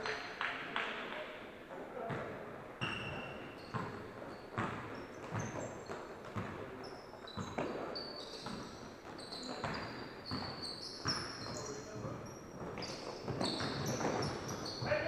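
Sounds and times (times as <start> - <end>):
shoes squeaking on court: 2.1 - 15.0
basketball bouncing on wood floor: 3.7 - 6.6, 9.6 - 14.9.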